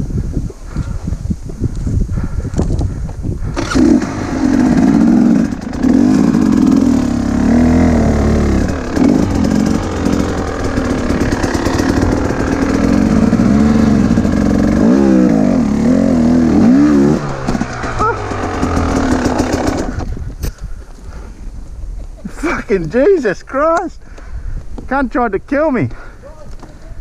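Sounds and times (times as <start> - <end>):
dirt bike engine revving: 3.5 - 20.2.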